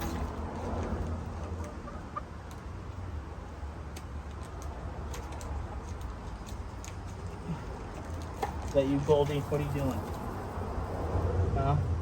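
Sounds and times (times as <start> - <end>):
hens clucking softly: 1.4 - 2.4.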